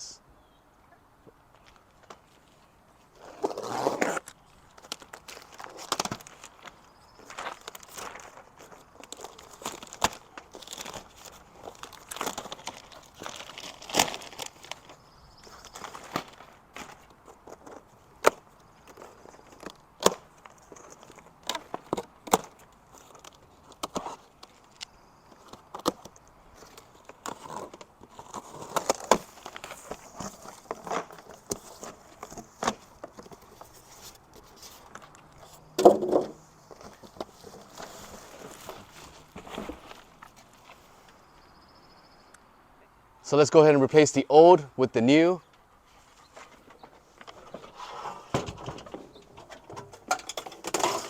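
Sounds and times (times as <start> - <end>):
cardboard tearing: 3.2 - 6.6, 7.5 - 14.9, 26.8 - 33.0
plastic packaging crinkling: 4.3 - 17.8.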